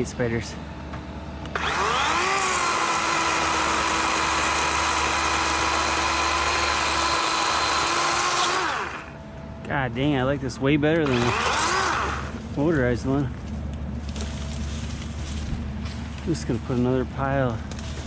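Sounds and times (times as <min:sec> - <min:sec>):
battery chainsaw motor whine: 0:01.5 - 0:09.2, 0:11.0 - 0:12.5.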